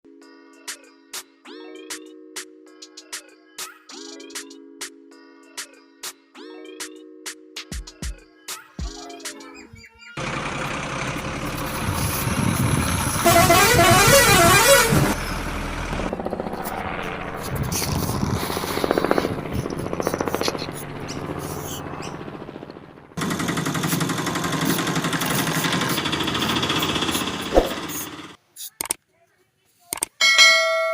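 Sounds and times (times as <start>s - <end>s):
vehicle noises: 10.2s - 28.4s
horn-like tones: 13.1s - 15.2s.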